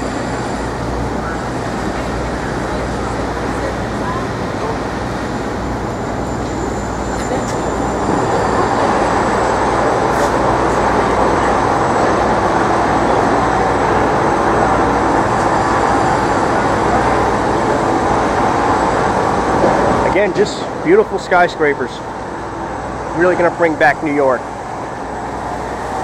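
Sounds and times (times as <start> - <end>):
city traffic rumbling: 0.0 - 26.0
machinery rumbling: 0.0 - 26.0.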